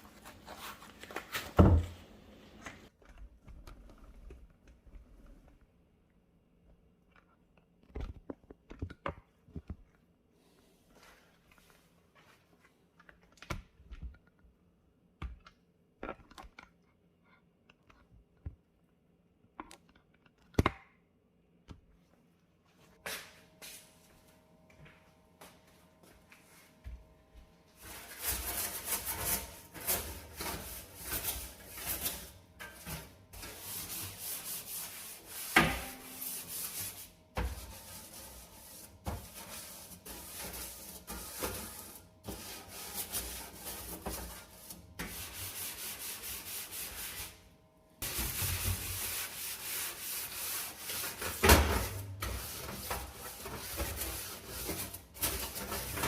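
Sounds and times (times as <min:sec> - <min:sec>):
brush scrubbing stove: 0:27.8 - 0:56.0.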